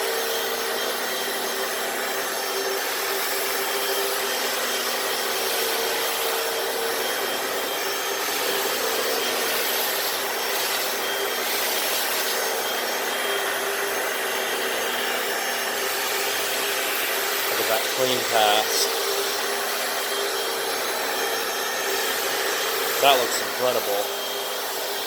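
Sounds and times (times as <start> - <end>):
suction motor whining: 0.0 - 25.0
brushes scrubbing concrete floor: 2.0 - 25.0.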